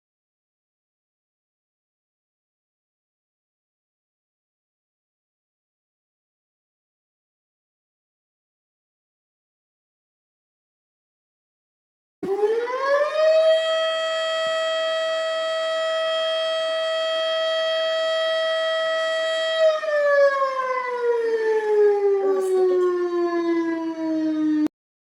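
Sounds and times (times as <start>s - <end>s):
siren winding up and down: 12.2s - 24.7s.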